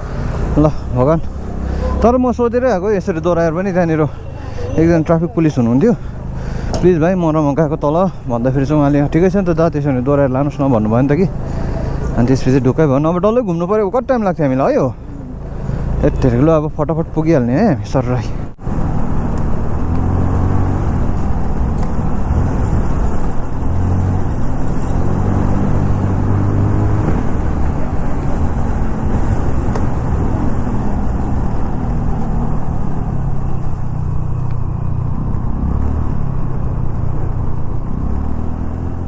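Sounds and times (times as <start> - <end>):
rushing road noise: 0.0 - 39.0
scooter engine revving: 18.9 - 39.0.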